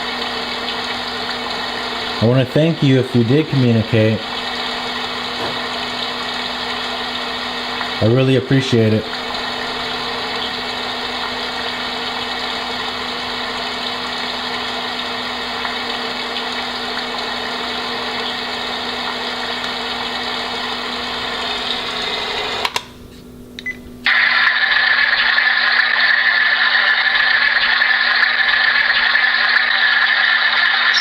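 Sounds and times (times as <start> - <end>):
white noise machine hiss: 0.0 - 21.6.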